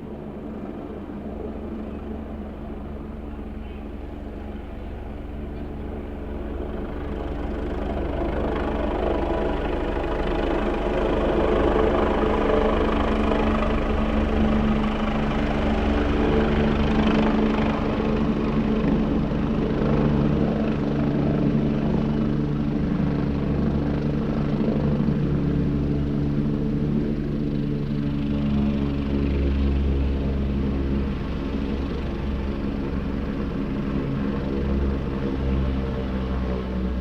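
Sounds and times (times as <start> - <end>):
helicopter rotor and engine drone: 0.0 - 37.0.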